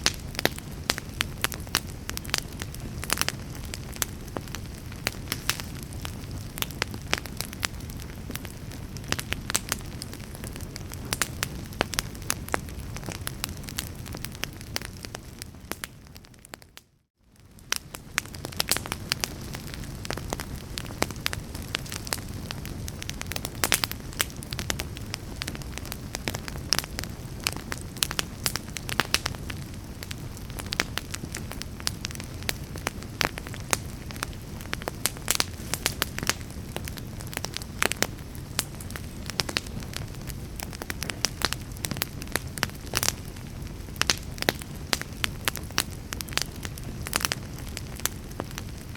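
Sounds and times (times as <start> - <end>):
fire crackling and popping: 0.0 - 48.9.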